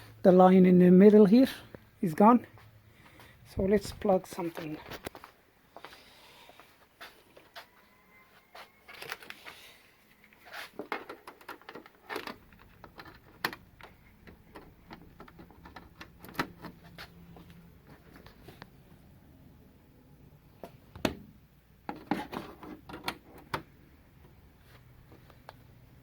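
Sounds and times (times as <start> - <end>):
cables and parts rattling: 8.9 - 19.0.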